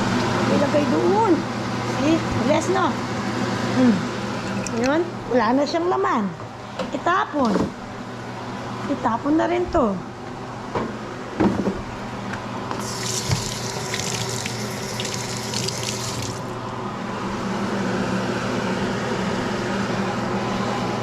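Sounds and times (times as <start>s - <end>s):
tap running into sink: 12.7s - 16.4s.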